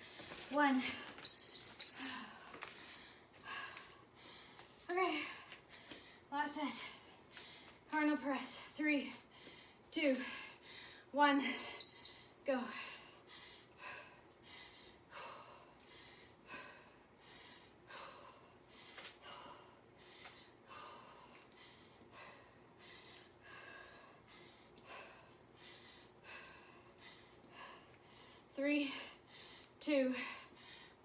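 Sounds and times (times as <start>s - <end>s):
woman breathing hard: 2.0s - 7.9s, 9.2s - 11.1s, 12.6s - 31.0s.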